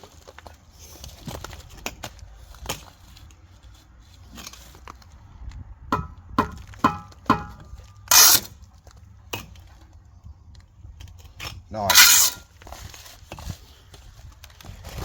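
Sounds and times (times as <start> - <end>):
steel trowel tapping concrete block: 6.0 - 8.4
trowel scraping: 6.9 - 8.6, 11.8 - 12.6.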